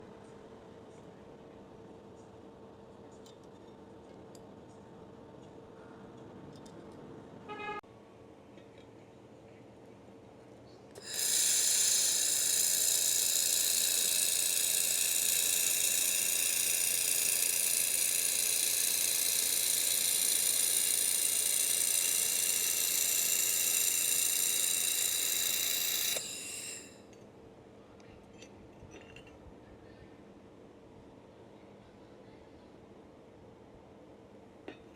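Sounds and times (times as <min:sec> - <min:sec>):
laser welder hissing: 0:11.0 - 0:27.0.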